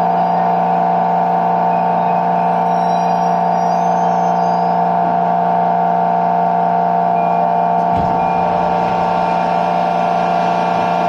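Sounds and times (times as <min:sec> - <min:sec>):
motor-generator whine: 0:00.0 - 0:11.0
low thud: 0:07.8 - 0:09.2.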